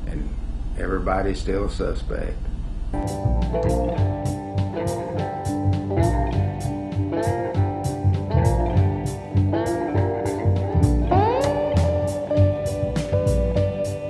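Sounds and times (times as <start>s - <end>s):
bluesy electric guitar: 3.0s - 14.0s
steady drum beat: 3.0s - 14.0s.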